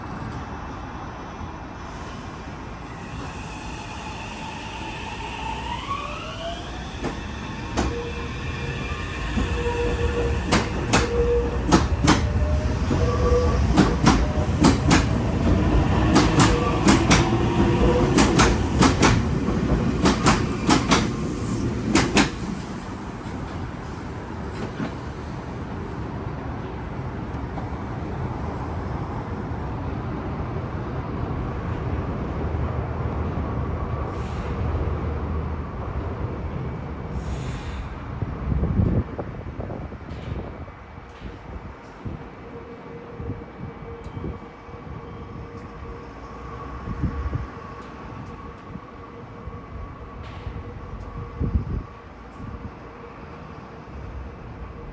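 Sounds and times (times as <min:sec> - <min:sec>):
train rumbling past: 0:00.0 - 0:54.9
train wheels clacking: 0:06.2 - 0:23.7.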